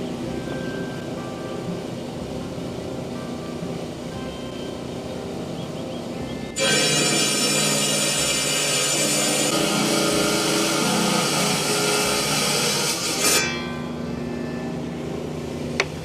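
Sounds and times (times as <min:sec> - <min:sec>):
wet saw grinding whine: 0:06.3 - 0:16.0
saw motor running: 0:06.5 - 0:15.4.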